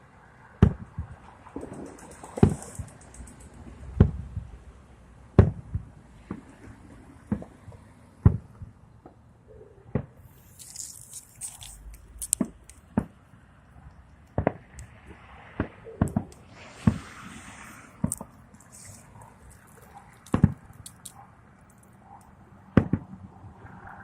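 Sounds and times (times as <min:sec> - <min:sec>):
fireworks bangs and pops: 0:00.6 - 0:03.4, 0:12.1 - 0:13.2, 0:14.3 - 0:14.8, 0:15.6 - 0:17.2, 0:17.9 - 0:20.8, 0:22.8 - 0:23.2
crackling hiss of fireworks: 0:01.0 - 0:03.8, 0:14.3 - 0:21.1.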